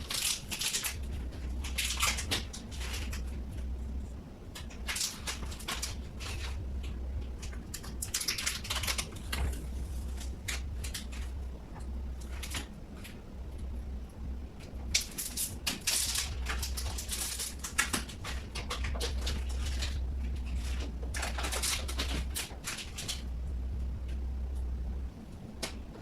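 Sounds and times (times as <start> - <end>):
low hum: 0.0 - 26.0
rustling and clicking: 14.6 - 24.7.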